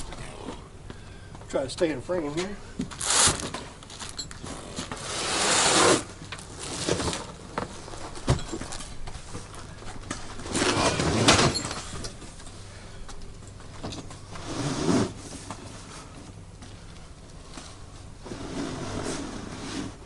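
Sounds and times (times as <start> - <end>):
canopy rustling and sliding: 17.6 - 20.0.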